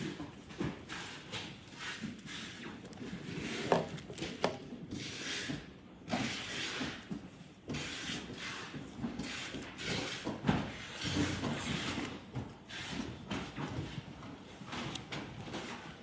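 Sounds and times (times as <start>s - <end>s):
plastic parts clicking and knocking: 2.8s - 4.8s.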